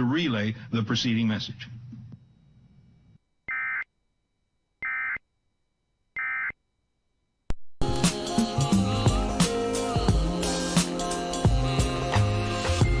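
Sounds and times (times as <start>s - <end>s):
music: 7.8s - 13.0s.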